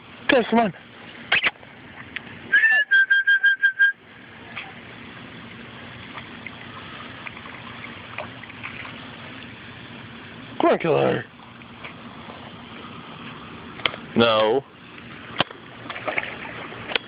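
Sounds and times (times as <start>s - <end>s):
person whistling to call dog: 2.5s - 4.0s.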